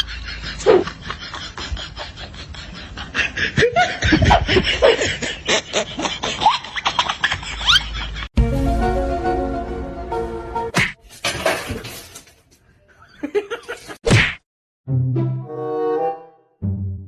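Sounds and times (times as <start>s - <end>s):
background music: 8.4s - 10.8s.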